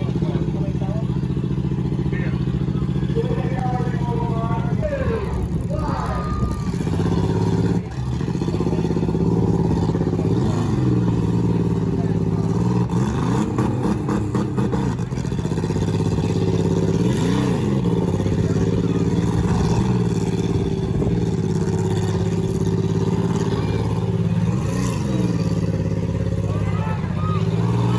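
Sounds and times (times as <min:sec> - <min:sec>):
car engines revving: 0:00.0 - 0:27.9.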